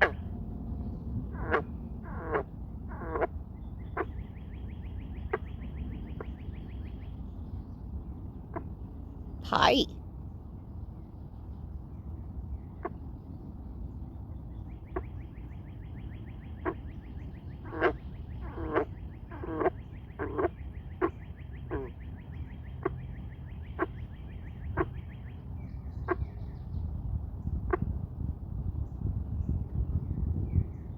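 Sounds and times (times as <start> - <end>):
frog croaking: 1.3 - 3.3, 17.6 - 22.0.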